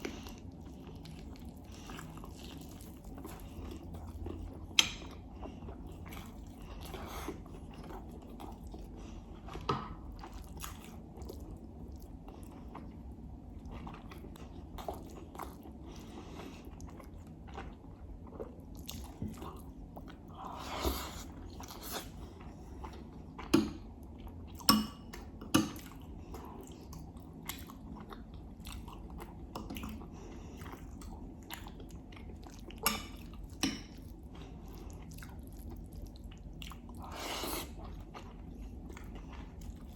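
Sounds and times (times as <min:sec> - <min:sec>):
close chewing and biting: 0:00.0 - 0:20.3
steady low hum: 0:00.0 - 0:39.9.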